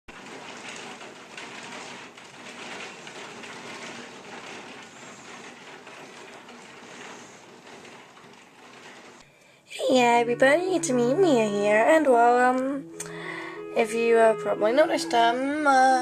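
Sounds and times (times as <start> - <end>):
steady rain falling: 0.1 - 9.6.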